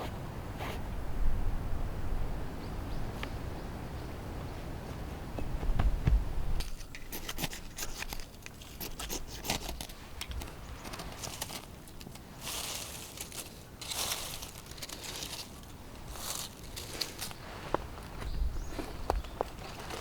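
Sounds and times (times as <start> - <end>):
crinkling and rustling: 5.6 - 20.0.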